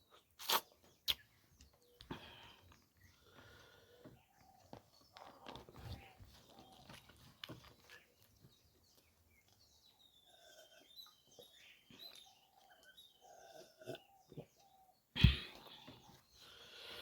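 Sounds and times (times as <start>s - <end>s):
wet chewing and lip smacks: 0.1s - 1.3s.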